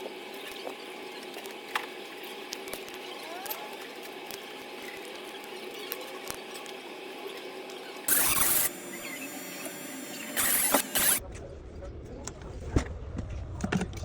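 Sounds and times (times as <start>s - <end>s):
steady hum: 3.8s - 11.3s
loud burst of noise: 8.1s - 11.2s.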